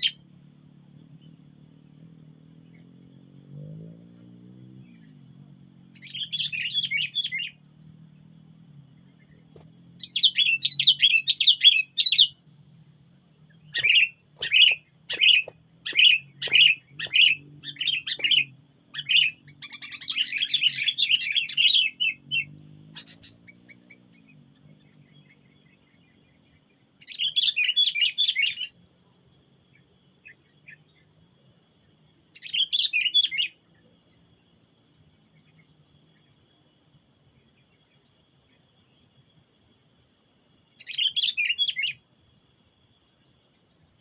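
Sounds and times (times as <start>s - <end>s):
sharp bird calls: 0.0s - 0.4s, 4.8s - 28.8s, 32.4s - 33.6s, 40.8s - 42.0s
bulbuls chattering: 13.4s - 22.4s.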